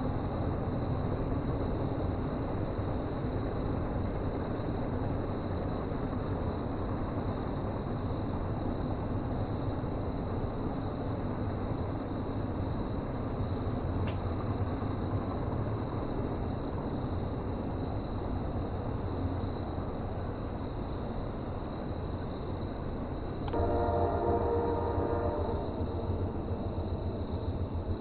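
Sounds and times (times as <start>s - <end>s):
train rumbling: 10.6s - 28.0s
high-pitched whine: 23.5s - 28.0s.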